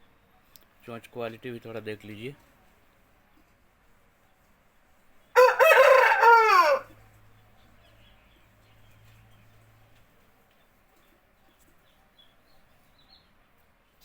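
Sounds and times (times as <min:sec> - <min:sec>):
rooster crowing: 0:05.4 - 0:07.0.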